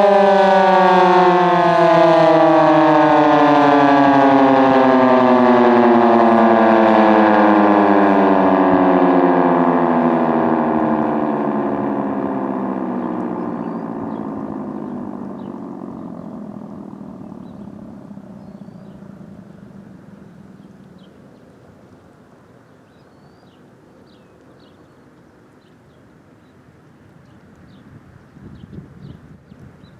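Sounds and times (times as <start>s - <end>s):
warning siren winding down: 0.0s - 21.3s.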